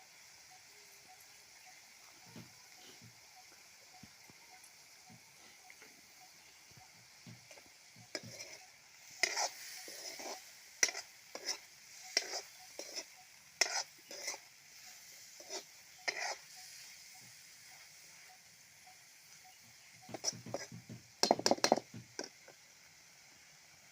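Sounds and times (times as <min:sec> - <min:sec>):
faint sizzle: 0:00.0 - 0:23.9
spoon scraping a pan: 0:07.2 - 0:18.3, 0:20.0 - 0:22.6.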